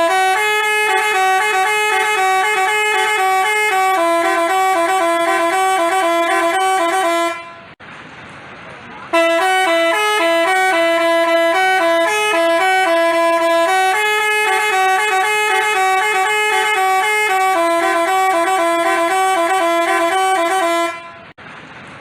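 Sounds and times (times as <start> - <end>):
bus horn playing a tune: 0.0 - 7.8, 9.1 - 21.4.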